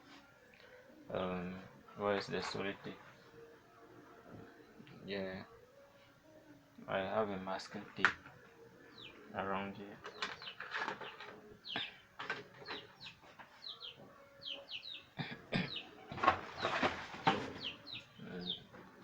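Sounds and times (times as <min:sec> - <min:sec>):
birds chirping: 0:00.0 - 0:19.0
clatter and rustling of handling: 0:10.0 - 0:14.2, 0:16.1 - 0:18.0.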